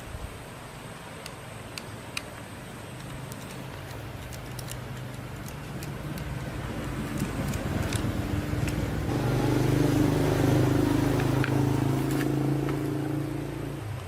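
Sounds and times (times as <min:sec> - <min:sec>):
low mechanical hum: 0:00.0 - 0:14.0
small hard parts clicking: 0:01.2 - 0:09.1.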